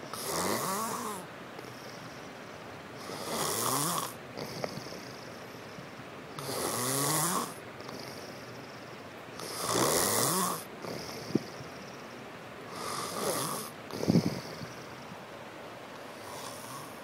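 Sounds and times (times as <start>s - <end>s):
person snoring: 0.1s - 1.9s, 6.4s - 8.3s, 9.4s - 11.6s, 12.7s - 14.8s, 16.2s - 17.0s.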